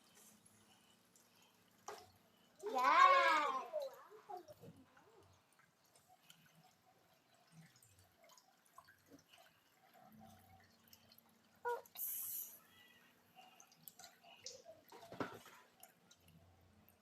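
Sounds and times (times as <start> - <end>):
water dripping and splashing: 0.0 - 17.0
water spraying hiss: 12.0 - 12.6.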